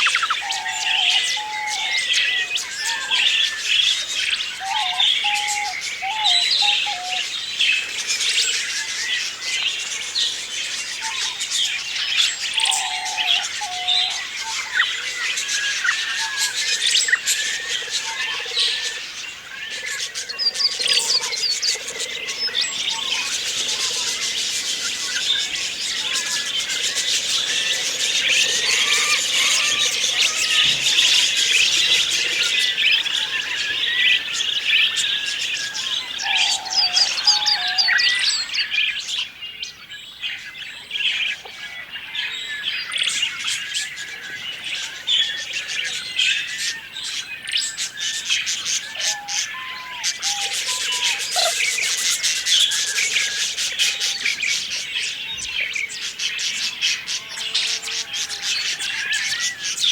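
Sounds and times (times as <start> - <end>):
budgerigars chattering: 0.0 - 8.7, 11.0 - 39.3, 42.7 - 59.9.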